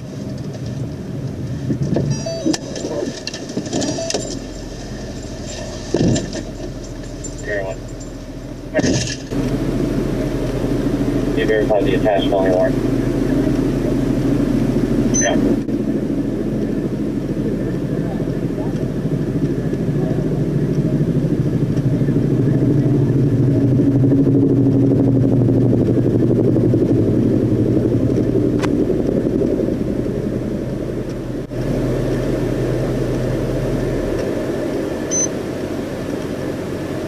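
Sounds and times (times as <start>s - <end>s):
road noise: 0.0s - 37.0s
vehicle engine rumble: 0.0s - 37.0s
short high beep: 2.1s - 2.6s, 3.8s - 4.4s, 15.1s - 15.4s, 35.1s - 35.3s.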